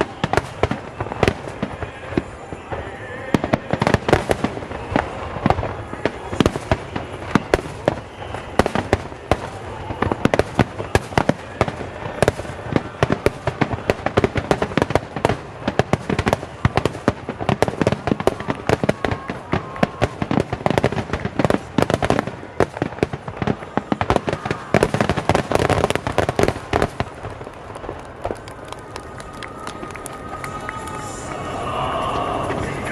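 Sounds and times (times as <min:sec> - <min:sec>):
fireworks bursting: 0:00.0 - 0:32.9.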